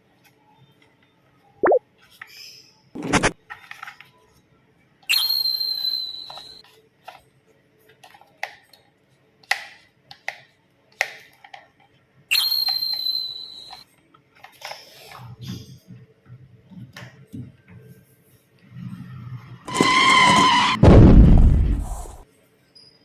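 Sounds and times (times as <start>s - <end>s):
plastic toy trains clicking: 3.4s - 4.3s, 6.2s - 15.4s.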